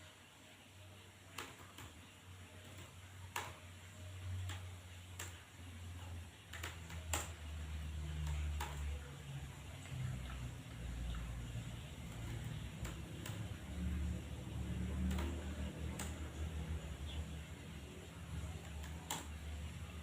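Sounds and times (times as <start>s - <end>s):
keyboard keys clicking: 6.0s - 11.3s, 12.0s - 19.8s.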